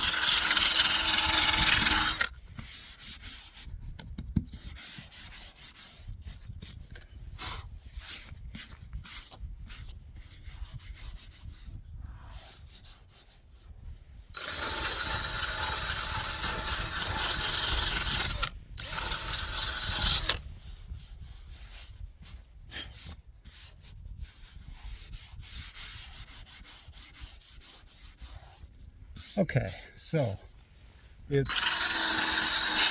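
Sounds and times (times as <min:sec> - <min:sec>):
sandpaper scratching: 0:00.0 - 0:02.3, 0:14.4 - 0:20.4, 0:31.4 - 0:32.9.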